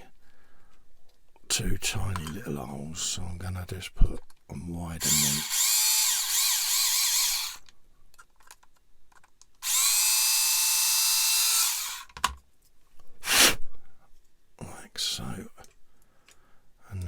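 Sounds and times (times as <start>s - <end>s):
electric drill motor whine: 5.0s - 7.6s, 9.6s - 12.1s.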